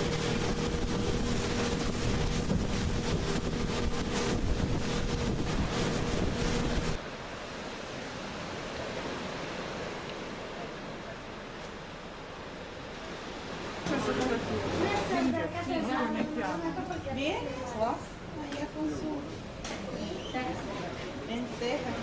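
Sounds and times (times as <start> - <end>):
motorboat engine running: 0.0 - 7.0
wind buffeting microphone: 0.0 - 7.0
steady rushing noise: 0.0 - 15.8.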